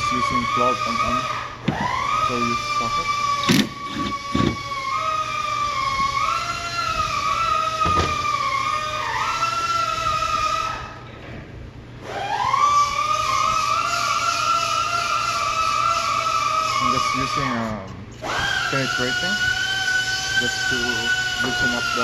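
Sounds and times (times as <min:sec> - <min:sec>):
cordless power tool motor whining: 0:00.0 - 0:08.4, 0:18.2 - 0:22.0.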